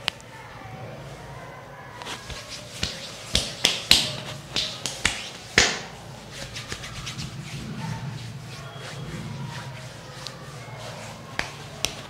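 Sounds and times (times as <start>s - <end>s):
hand strikes on head: 2.8s - 5.9s.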